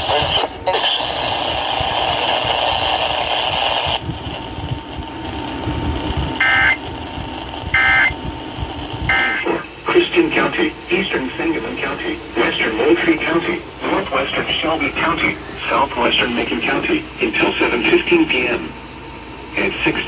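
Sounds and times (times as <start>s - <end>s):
radio static hiss: 0.0s - 18.8s, 19.4s - 20.0s
buzzy data tone bursts: 5.2s - 9.5s.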